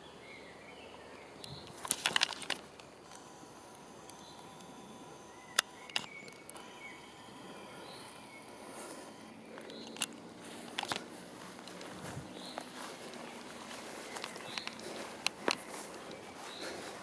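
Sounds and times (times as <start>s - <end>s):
sharp clicks or cracks: 1.4s - 6.8s, 9.6s - 13.5s, 14.1s - 16.2s.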